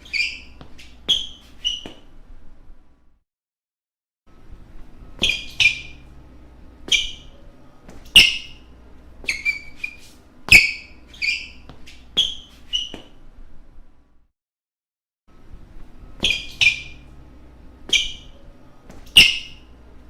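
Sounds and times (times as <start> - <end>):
basketball shoes squeaking: 0.0 - 2.2, 5.0 - 6.2, 6.8 - 13.2, 16.1 - 17.2, 17.8 - 19.8.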